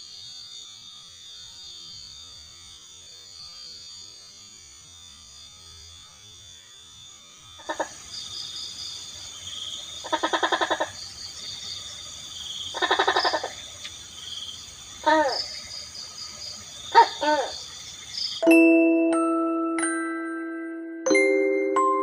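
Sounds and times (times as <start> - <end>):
insects trilling: 0.0 - 18.6
rising-and-falling animal calls: 7.6 - 8.0, 10.0 - 11.0, 12.7 - 13.7, 15.0 - 15.6, 16.9 - 17.7
rapid pulsed animal calls: 7.6 - 18.4
bell-like chime: 18.4 - 22.0.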